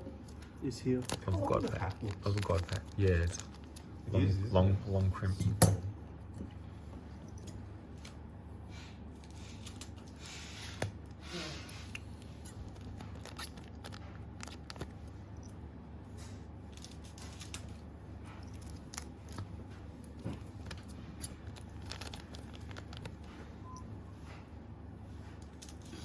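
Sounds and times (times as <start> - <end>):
steady low hum: 0.0 - 26.0
foil pack rustling: 0.7 - 4.0, 20.3 - 23.4.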